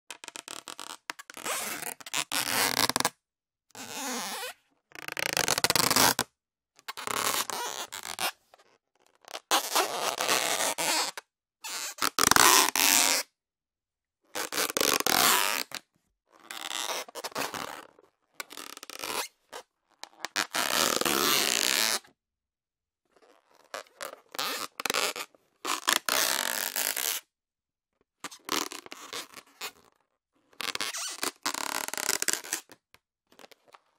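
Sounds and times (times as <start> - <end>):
rubber balloon squeaking: 0.3 - 3.1, 3.8 - 6.2, 6.9 - 8.4, 9.4 - 13.3, 14.4 - 15.8, 16.5 - 17.9, 18.5 - 22.0, 23.2 - 27.2, 30.6 - 32.7.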